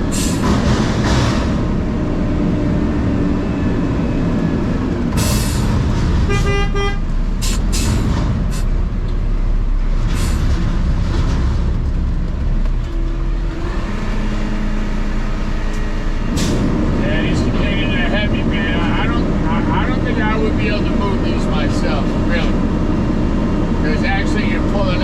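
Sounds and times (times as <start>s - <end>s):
truck engine running: 0.0s - 25.0s
truck horn toot: 6.2s - 7.1s.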